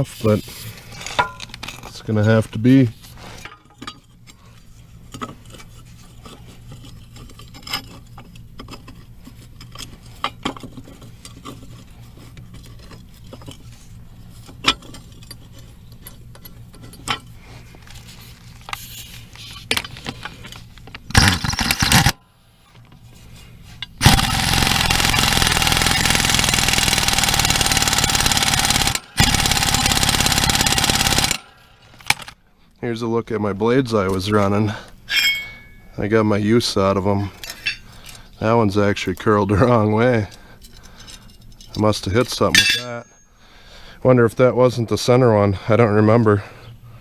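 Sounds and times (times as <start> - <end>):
tools clinking: 1.0 - 2.0, 3.4 - 4.4, 14.3 - 17.4, 23.8 - 32.4, 35.1 - 35.9, 37.4 - 38.2, 42.4 - 43.3
pneumatic impact wrench: 21.1 - 22.2, 24.0 - 32.4.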